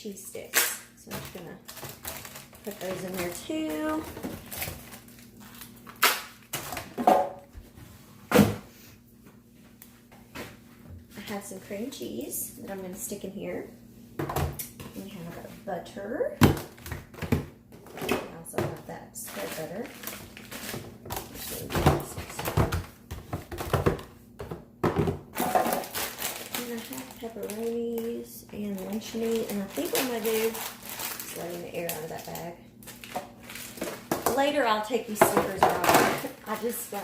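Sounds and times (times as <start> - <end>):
plastic containers knocking and clattering: 6.6 - 7.4, 14.2 - 15.0, 16.4 - 26.9, 33.0 - 36.9.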